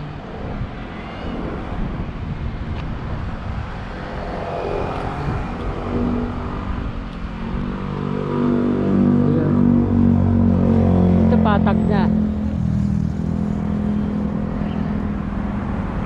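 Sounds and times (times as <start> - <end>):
road traffic noise: 0.0 - 16.0
vehicle engine running: 4.0 - 16.0.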